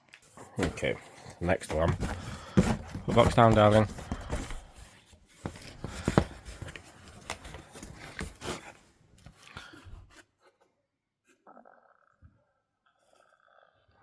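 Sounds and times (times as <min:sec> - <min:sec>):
box rustling and scraping: 0:00.3 - 0:10.3.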